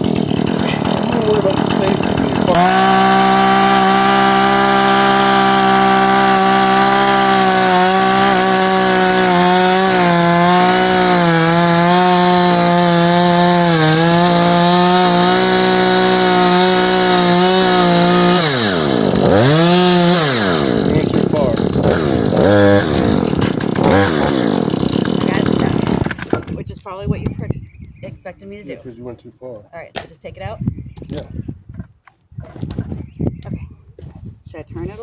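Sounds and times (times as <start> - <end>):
chainsaw cutting log: 0.0 - 26.7.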